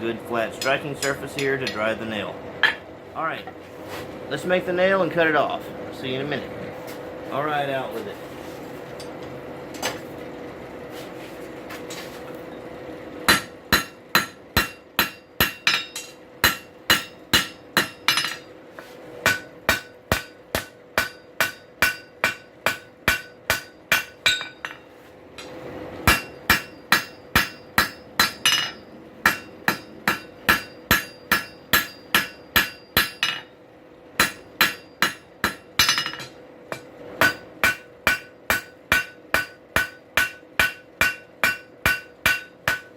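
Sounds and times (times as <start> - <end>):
steady hum: 0.0 - 42.9
hammer ringing on anvil: 13.3 - 18.5, 19.2 - 24.8, 26.1 - 33.5, 34.2 - 42.9.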